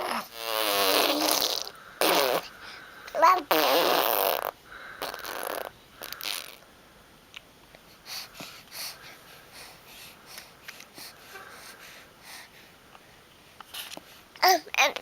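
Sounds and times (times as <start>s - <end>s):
person snorting and puffing: 0.1s - 2.5s.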